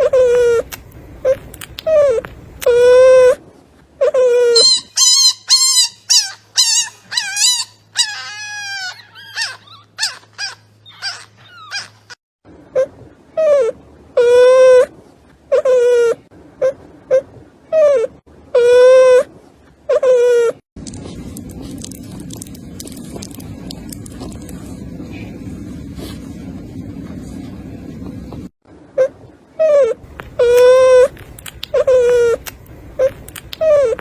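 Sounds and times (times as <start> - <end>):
high thin puppy squeaks: 0.0 - 3.4, 4.0 - 12.2, 12.8 - 14.9, 15.5 - 19.3, 19.9 - 20.6, 29.0 - 34.0
puppies whining squeals: 0.0 - 3.4, 4.0 - 14.9, 15.5 - 19.3, 19.9 - 20.6, 29.0 - 34.0.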